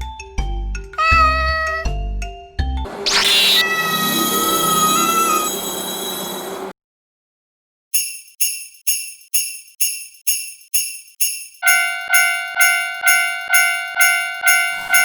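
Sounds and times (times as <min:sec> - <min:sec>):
jingle bells struck rhythmically: 0:08.0 - 0:15.0
lower ringing tone: 0:11.6 - 0:15.0.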